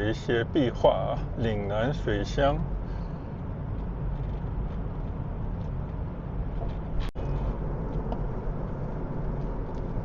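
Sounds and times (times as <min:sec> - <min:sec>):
car road and engine noise: 0:00.0 - 0:10.0.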